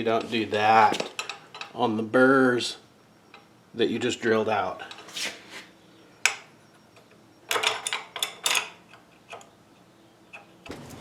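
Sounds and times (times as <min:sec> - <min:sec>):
metal hardware clicking and clinking: 0:00.1 - 0:01.8, 0:07.5 - 0:09.5.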